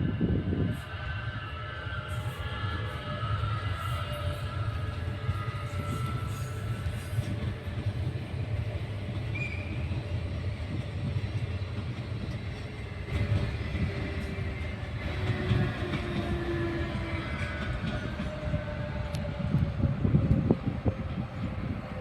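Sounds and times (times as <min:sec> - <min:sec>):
electric train rumbling: 0:00.0 - 0:22.0
train knocks: 0:04.9 - 0:22.0.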